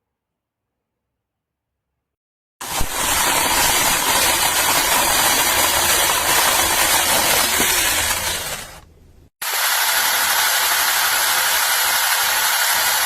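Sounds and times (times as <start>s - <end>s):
electric chainsaw whining: 2.6s - 13.0s.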